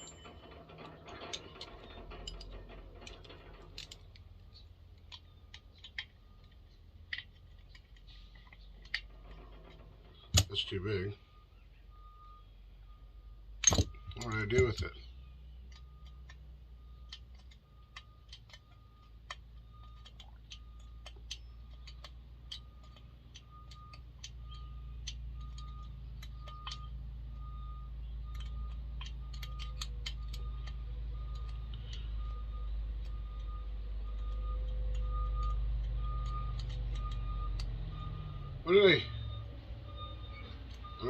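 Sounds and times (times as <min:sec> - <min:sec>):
metal tools clinking: 0:00.0 - 0:10.7.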